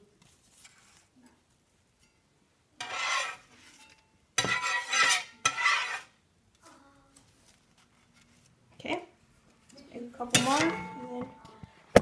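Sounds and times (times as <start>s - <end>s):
spatula scraping: 2.8s - 6.2s, 10.3s - 11.0s
spatula clack: 4.4s - 6.1s.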